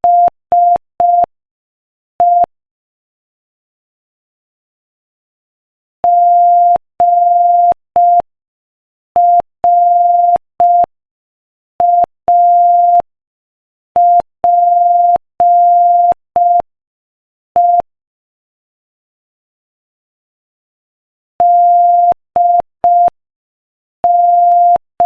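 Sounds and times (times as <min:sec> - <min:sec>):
morse code beeps: 0:00.0 - 0:01.3, 0:21.4 - 0:23.1, 0:24.0 - 0:24.9.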